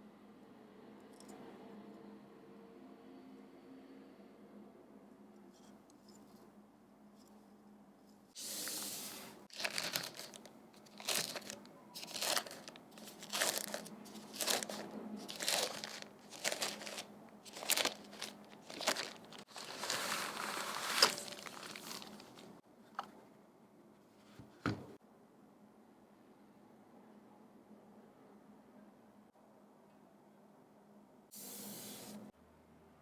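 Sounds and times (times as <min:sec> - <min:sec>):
packaging crinkling: 0:08.4 - 0:22.6.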